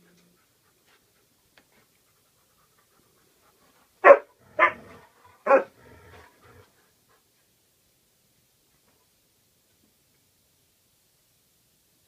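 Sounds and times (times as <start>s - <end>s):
dog barking: 4.0s - 5.8s.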